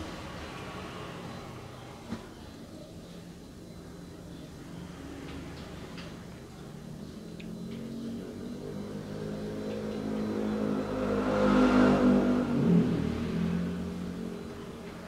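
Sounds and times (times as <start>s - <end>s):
vehicle engine passing by: 6.9s - 15.0s.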